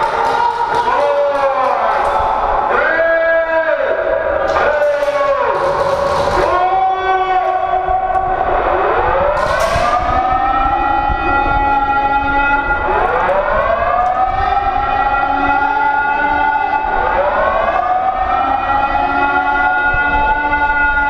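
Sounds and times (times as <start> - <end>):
wailing siren: 0.0 - 21.0.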